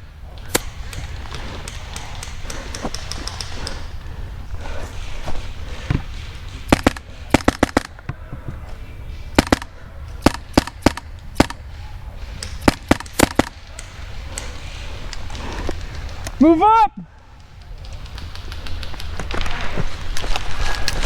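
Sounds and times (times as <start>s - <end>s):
airsoft gun shots: 5.7s - 8.3s, 9.3s - 14.5s.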